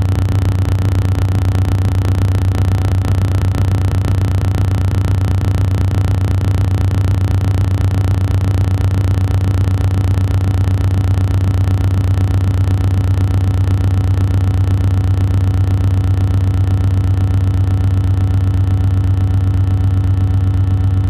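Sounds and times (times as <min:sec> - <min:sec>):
drone propellers humming: 0:00.0 - 0:11.9.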